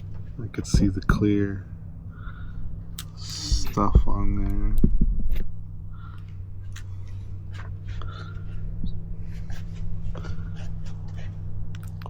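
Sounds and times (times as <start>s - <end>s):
steady low hum: 0.0s - 12.0s
scratching and rustling handling: 6.6s - 12.0s.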